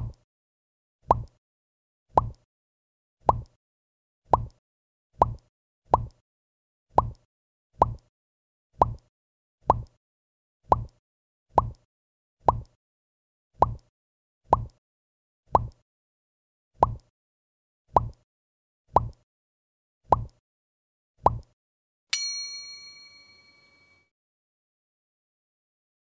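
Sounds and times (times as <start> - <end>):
bell-like ding: 22.2 - 24.1.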